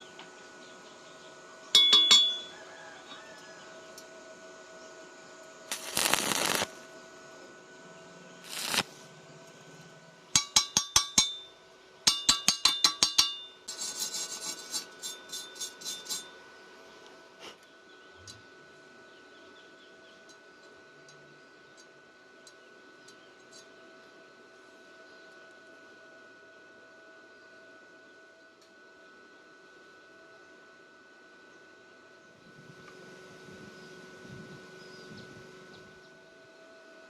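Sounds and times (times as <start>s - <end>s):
hammer striking steel: 1.8s - 2.5s, 10.4s - 13.6s
short hissing rushes: 5.7s - 6.7s, 8.5s - 9.0s.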